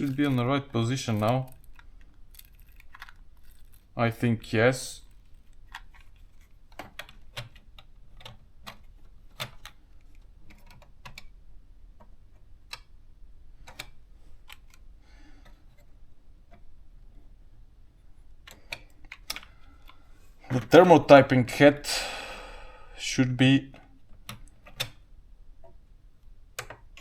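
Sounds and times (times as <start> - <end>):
small plastic clicks and taps: 26.6 - 27.0.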